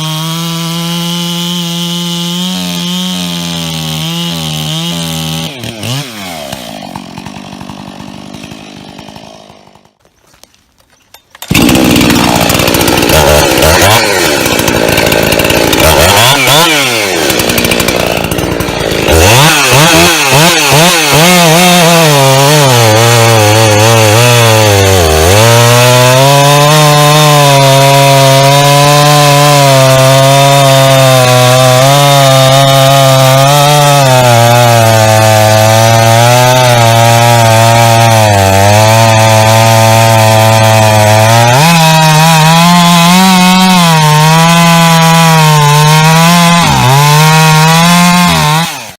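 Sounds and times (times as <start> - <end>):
chainsaw revving: 0.0 - 10.0, 11.4 - 48.9.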